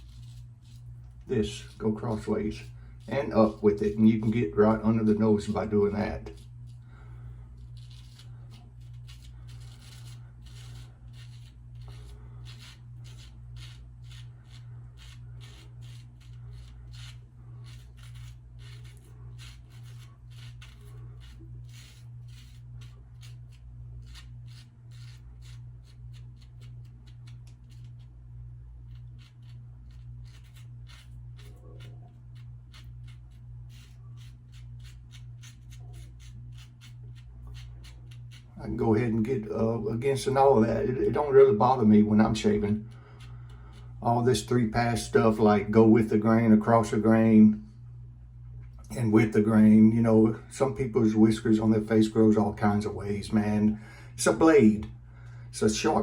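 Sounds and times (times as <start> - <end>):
razor scraping stubble: 0.0 - 47.3
low hum: 0.0 - 56.0.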